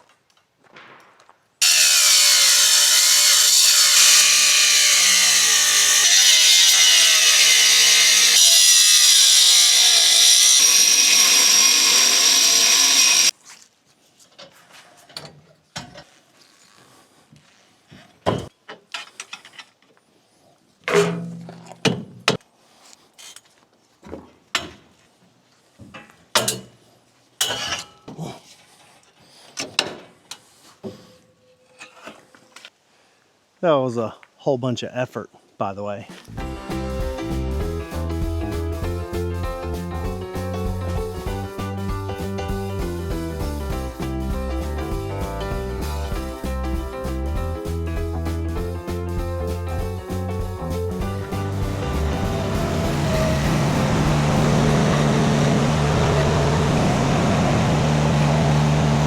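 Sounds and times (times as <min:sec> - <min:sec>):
knocks and clanks: 0:00.6 - 0:01.8
power tool running: 0:01.6 - 0:13.3, 0:51.1 - 0:59.0.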